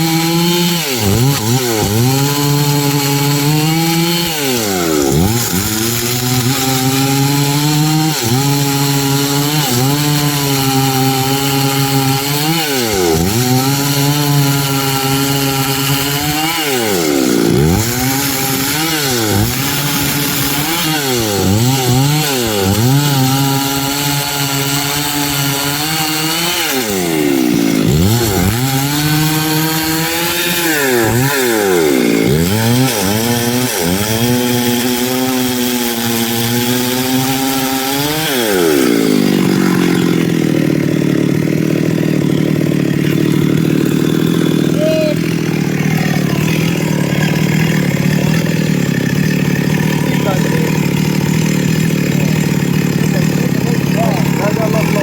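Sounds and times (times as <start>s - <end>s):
chainsaw sawing through log: 0.0s - 55.0s.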